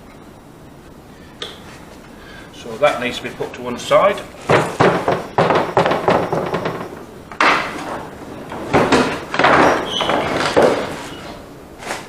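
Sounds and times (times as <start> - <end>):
wooden panels knocking: 4.0 - 11.4
wood scraping on wood: 4.2 - 12.0.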